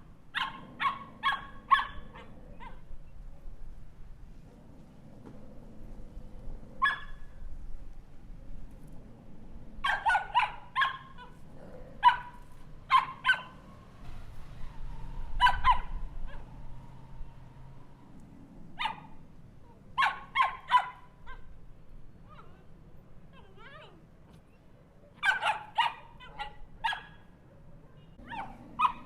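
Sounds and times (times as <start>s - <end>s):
small dog yapping: 0.3s - 2.9s, 6.8s - 7.3s, 9.8s - 11.4s, 12.0s - 13.6s, 15.4s - 16.6s, 18.8s - 21.6s, 22.2s - 22.7s, 25.2s - 27.2s, 28.2s - 29.0s.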